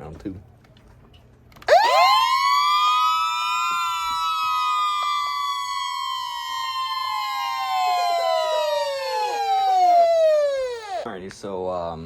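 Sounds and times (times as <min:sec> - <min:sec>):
siren wailing: 0:01.7 - 0:11.1.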